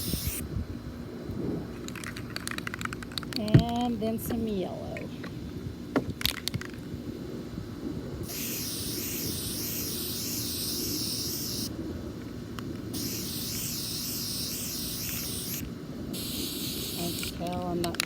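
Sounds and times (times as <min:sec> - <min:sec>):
spray paint can hissing: 0:00.0 - 0:00.4, 0:08.2 - 0:11.7, 0:12.8 - 0:18.0
low steady rumble: 0:00.0 - 0:18.0.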